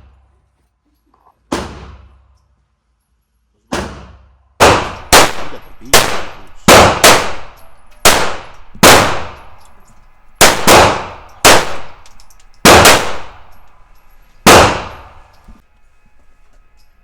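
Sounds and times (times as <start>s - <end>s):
gunshots with echo: 4.6s - 15.6s.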